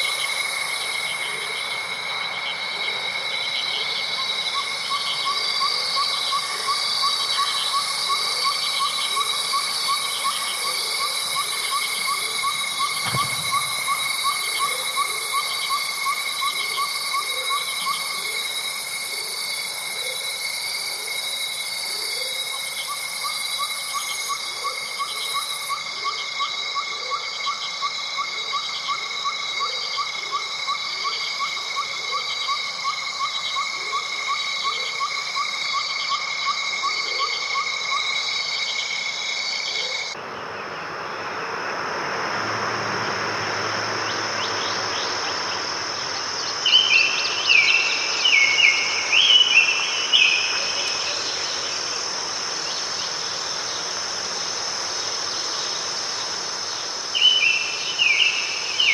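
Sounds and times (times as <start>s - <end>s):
crickets and insects trilling: 0.0s - 58.9s
bird calling: 10.0s - 18.4s, 42.8s - 53.3s.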